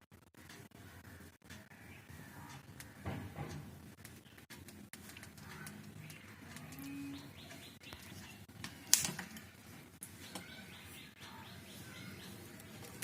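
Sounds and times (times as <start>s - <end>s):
small birds chirping: 0.4s - 3.2s, 3.8s - 13.0s.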